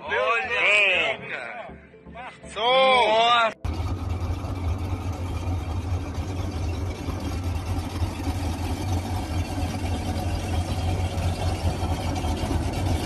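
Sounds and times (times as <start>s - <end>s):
boat engine idling: 3.6s - 13.0s.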